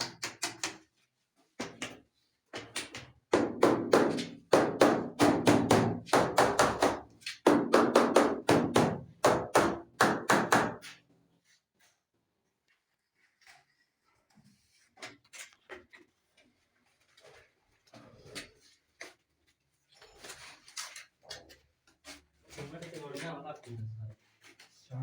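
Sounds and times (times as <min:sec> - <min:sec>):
wall tile being tapped down: 0:00.0 - 0:01.0, 0:01.6 - 0:11.0.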